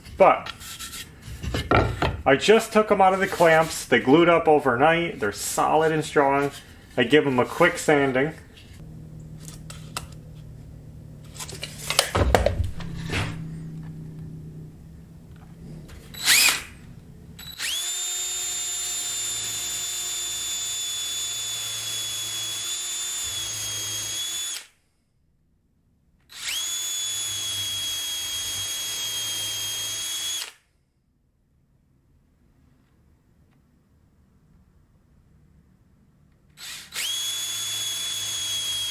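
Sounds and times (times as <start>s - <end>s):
electric power tool motor whining: 15.9s - 24.7s, 26.3s - 30.6s, 36.6s - 38.9s.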